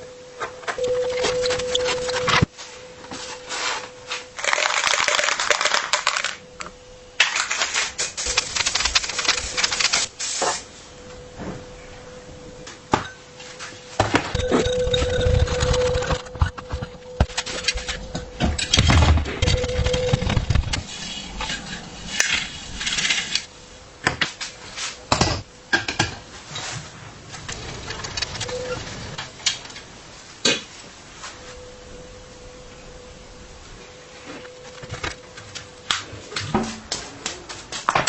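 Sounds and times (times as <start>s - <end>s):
scraping rumbling noise: 14.3s - 23.5s, 26.8s - 30.0s.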